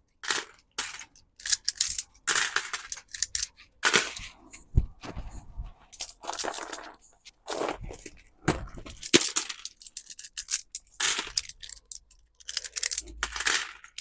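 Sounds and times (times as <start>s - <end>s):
coins clinking on a magnet: 0.2s - 4.2s, 9.0s - 14.0s.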